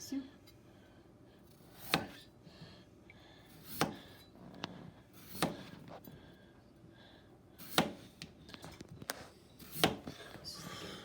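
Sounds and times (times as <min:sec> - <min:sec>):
knife chopping on board: 0:01.7 - 0:02.2, 0:03.6 - 0:04.2, 0:05.2 - 0:05.8, 0:07.6 - 0:08.3, 0:09.6 - 0:10.1.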